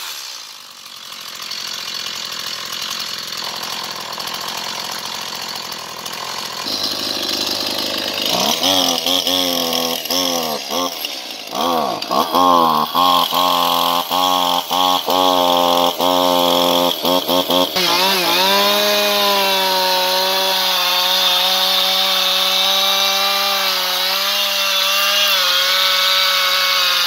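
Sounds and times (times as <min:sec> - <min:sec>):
small motor running: 0:00.0 - 0:19.0.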